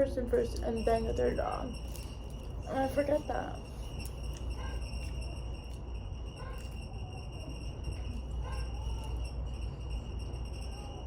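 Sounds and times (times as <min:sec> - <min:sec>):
high-pitched whine: 0:00.0 - 0:11.0
steady low hum: 0:00.0 - 0:11.0
faint voices: 0:06.4 - 0:11.0.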